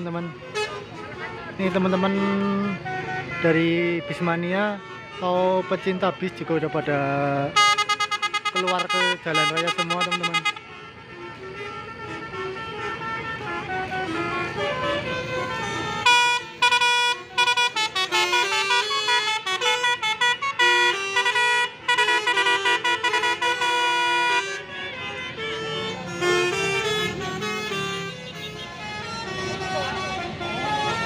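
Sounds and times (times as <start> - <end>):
bus horn playing multi-tone tune: 0.0 - 31.0
low rumble of bus engines: 0.0 - 31.0.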